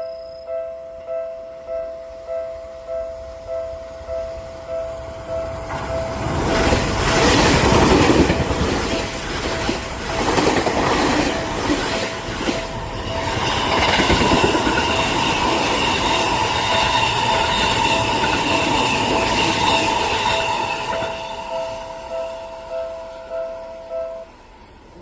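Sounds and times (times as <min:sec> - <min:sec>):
high squeal from train wheels: 0:04.4 - 0:25.0
train wheels clattering over rails: 0:05.5 - 0:22.0.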